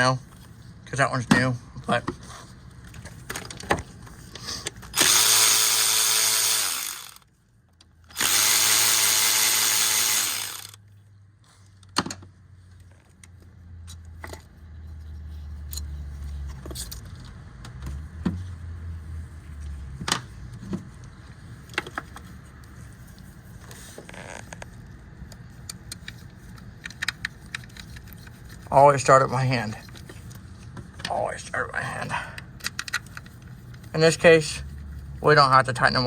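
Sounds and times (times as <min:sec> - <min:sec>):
cordless power tool spinning: 0:04.9 - 0:07.2, 0:08.1 - 0:10.8
clicks and knocks of parts: 0:25.3 - 0:28.7, 0:32.4 - 0:33.9.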